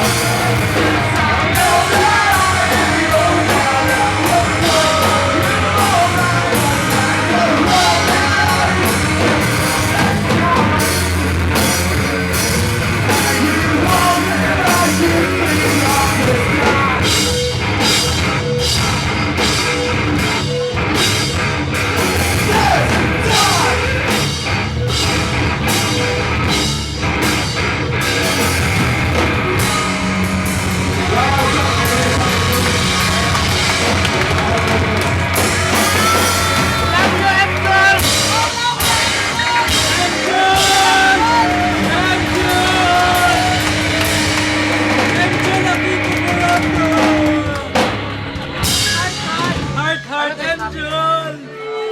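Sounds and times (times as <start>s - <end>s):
person singing: 0.0s - 17.5s, 29.5s - 47.9s
drum kit: 0.0s - 50.1s
distorted guitars: 0.0s - 51.8s.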